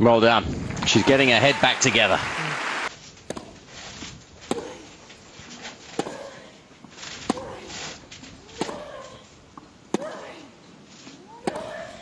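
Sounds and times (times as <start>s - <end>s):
rackets striking tennis ball: 3.2s - 3.6s, 4.4s - 4.9s, 5.8s - 7.9s, 8.5s - 10.4s, 11.4s - 12.0s.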